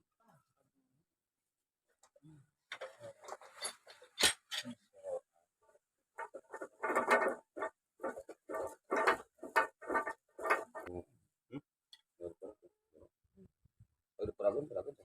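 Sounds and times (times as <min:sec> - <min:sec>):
mechanical clanks and rattles: 0:06.2 - 0:10.9.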